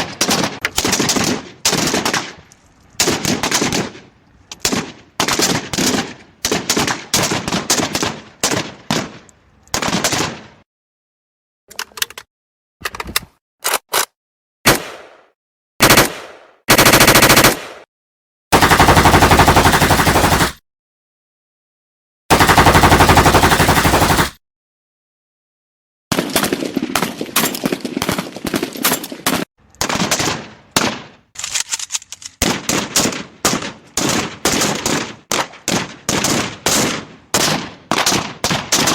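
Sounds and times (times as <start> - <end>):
rifle automatic fire: 0.0 - 2.4, 3.0 - 9.2, 15.8 - 17.9, 18.5 - 20.6, 22.3 - 24.4
rifle single shots: 0.0 - 10.5, 32.4 - 38.9.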